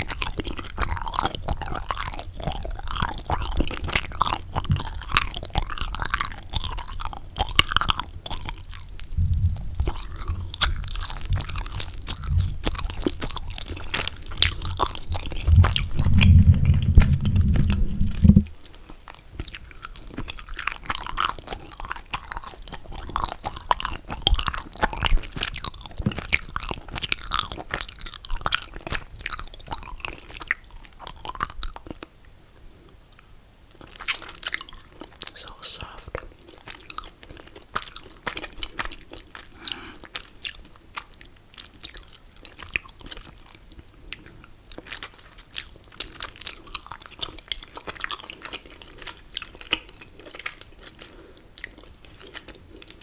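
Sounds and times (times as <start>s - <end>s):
mouth chewing sticky food: 0.0s - 53.0s
deep low rumble: 8.7s - 13.6s, 14.4s - 18.6s.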